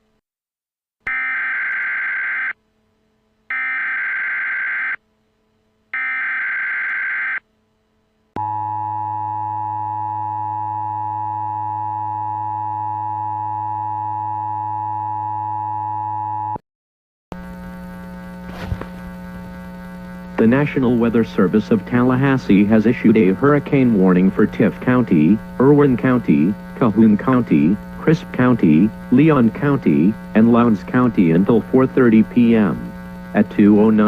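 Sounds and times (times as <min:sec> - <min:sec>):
low hum: 0:07.5 - 0:16.6.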